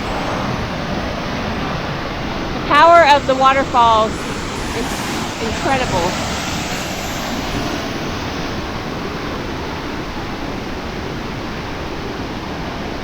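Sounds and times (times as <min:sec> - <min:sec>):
waterfall rushing: 0:00.0 - 0:09.5.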